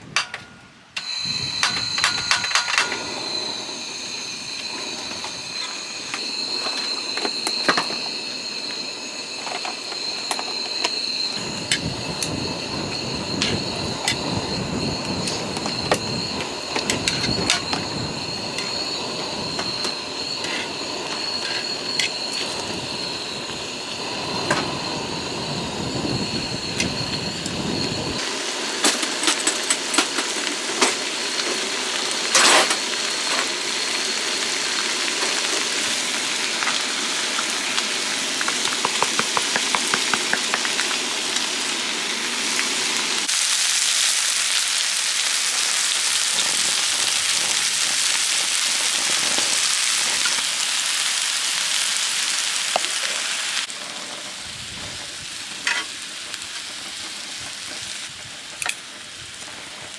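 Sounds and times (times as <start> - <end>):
scattered clicks and taps: 38.4 - 40.8.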